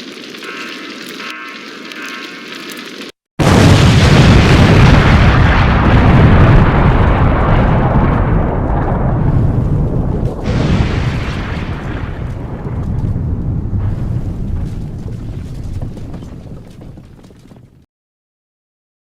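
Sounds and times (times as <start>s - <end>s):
deep explosion blast rumbling: 3.4s - 17.1s.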